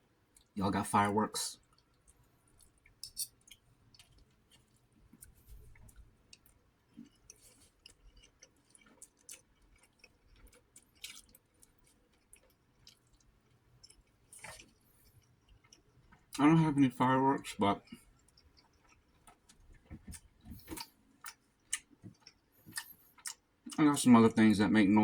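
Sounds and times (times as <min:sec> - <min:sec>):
faint wet chewing: 0:00.3 - 0:00.6, 0:01.5 - 0:16.4, 0:17.8 - 0:23.8.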